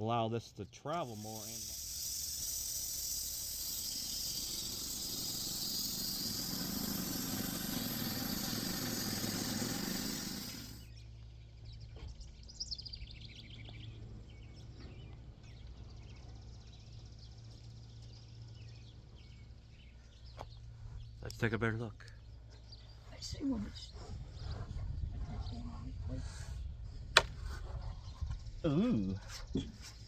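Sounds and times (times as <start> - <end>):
birds chirping: 0.9 - 26.0
bandsaw sawmill hissing: 1.0 - 10.9
low hum: 1.4 - 11.0.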